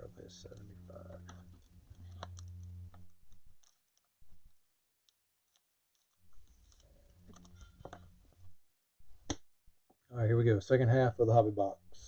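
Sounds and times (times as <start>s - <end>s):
low hum: 0.0s - 4.6s, 6.3s - 9.6s.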